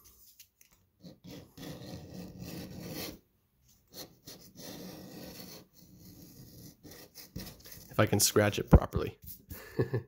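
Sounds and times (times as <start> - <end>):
coin scraping scratch card: 1.0 - 3.2, 3.9 - 8.2.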